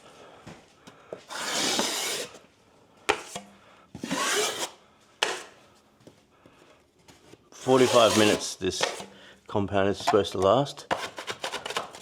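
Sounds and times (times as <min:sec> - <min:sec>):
plastering knife scraping: 0:01.3 - 0:02.4, 0:03.1 - 0:05.6, 0:07.6 - 0:09.2, 0:10.0 - 0:12.0.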